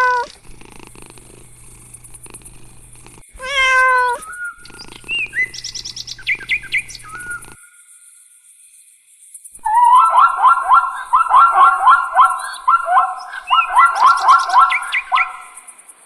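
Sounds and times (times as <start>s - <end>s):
fast high-pitched pulsing: 1.3s - 7.6s, 9.6s - 15.6s.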